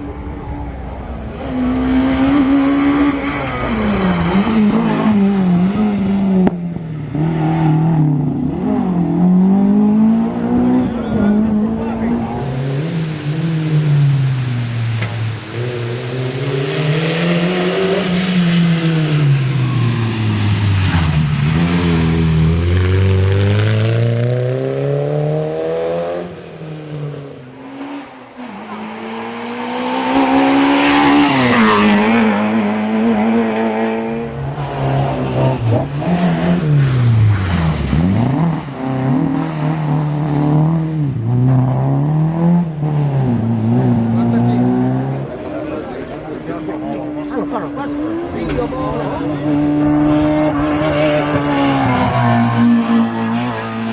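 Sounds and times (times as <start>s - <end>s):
rally car engine revving: 0.0s - 53.9s.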